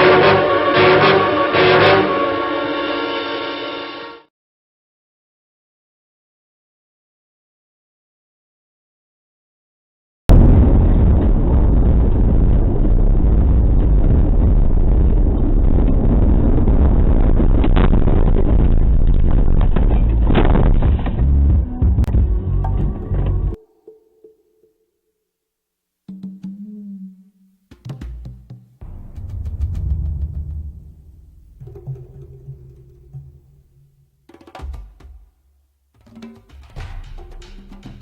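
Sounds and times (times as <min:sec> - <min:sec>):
music with drum hits: 0:27.7 - 0:38.0.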